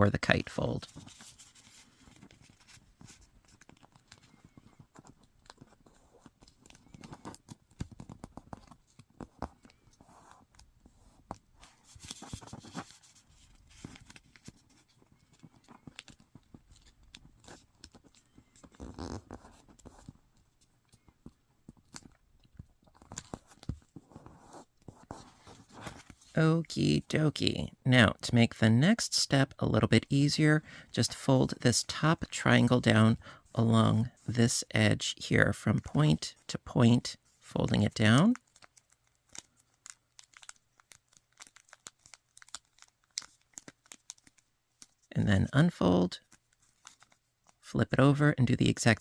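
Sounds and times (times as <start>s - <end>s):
paper rustling and crinkling: 0.8s - 26.4s, 37.3s - 45.1s, 46.2s - 47.6s.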